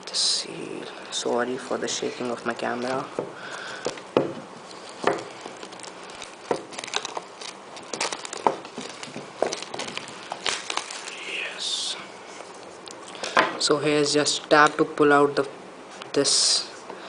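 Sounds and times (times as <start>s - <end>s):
cardboard box rustling and crinkling: 4.8s - 11.4s.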